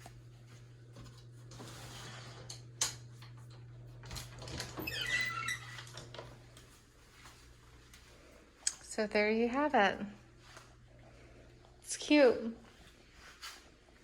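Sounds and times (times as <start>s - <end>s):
door rubbing and rattling: 4.0s - 6.4s
door hinge squeak: 4.6s - 6.0s.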